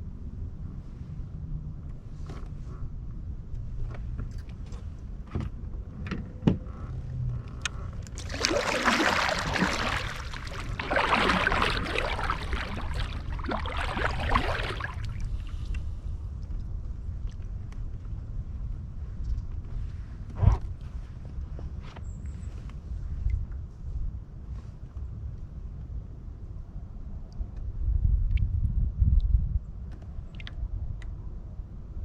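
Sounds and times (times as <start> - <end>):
wind rumbling on microphone: 0.0 - 32.0
paddle strokes splashing water: 8.1 - 15.9.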